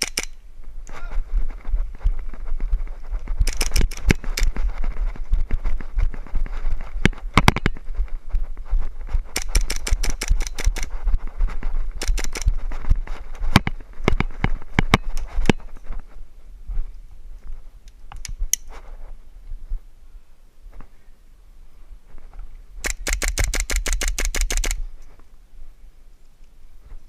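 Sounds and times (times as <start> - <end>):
airsoft guns firing: 0.0 - 0.4, 12.0 - 12.6, 22.8 - 24.8.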